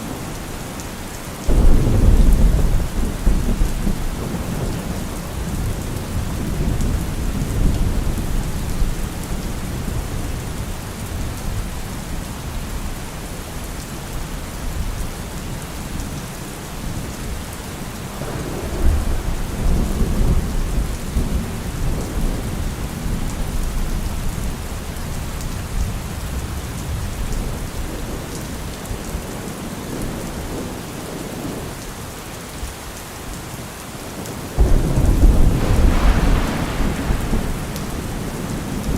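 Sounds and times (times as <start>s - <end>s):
steady rain: 0.0s - 38.9s
thunder rumbling: 1.5s - 11.6s, 18.1s - 28.7s, 34.6s - 38.9s.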